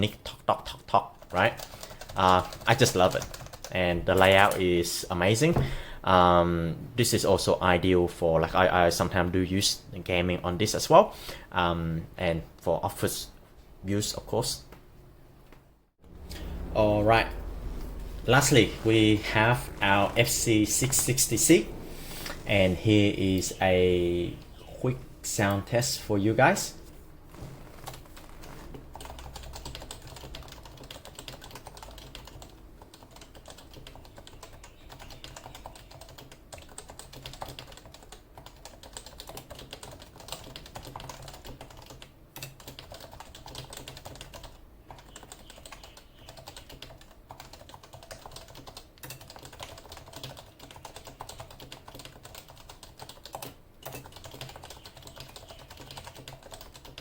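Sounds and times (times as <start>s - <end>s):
keyboard typing: 0.7s - 4.7s, 27.6s - 57.0s.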